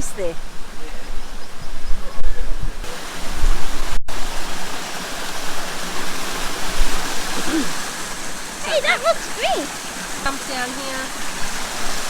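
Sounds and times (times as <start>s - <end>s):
waterfall rushing: 2.8s - 12.0s.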